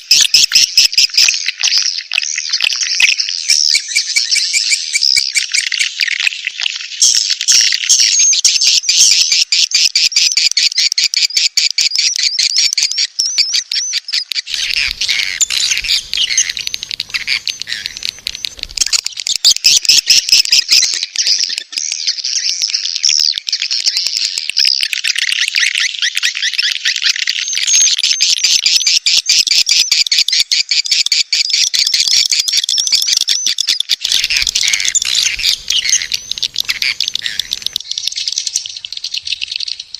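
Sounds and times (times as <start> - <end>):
swiftlets twittering and chirping: 0.0 - 2.6, 14.5 - 23.4, 34.0 - 39.9.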